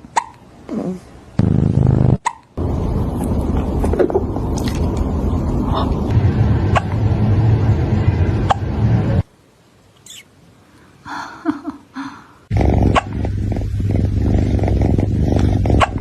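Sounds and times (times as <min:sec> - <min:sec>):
loud low rumble: 0:02.6 - 0:09.2, 0:12.5 - 0:16.0.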